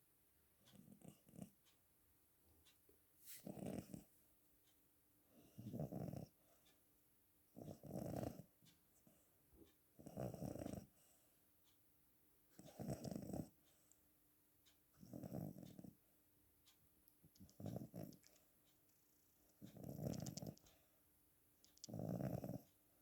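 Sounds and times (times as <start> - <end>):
cat snoring: 3.4 - 4.1, 5.4 - 6.4, 7.6 - 8.5, 10.0 - 11.1, 12.6 - 13.6, 15.0 - 16.0, 17.6 - 18.2, 19.6 - 20.5, 21.8 - 22.7.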